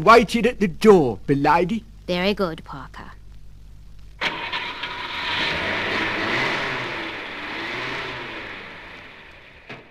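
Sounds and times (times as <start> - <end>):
rushing car engine: 4.2 - 9.9.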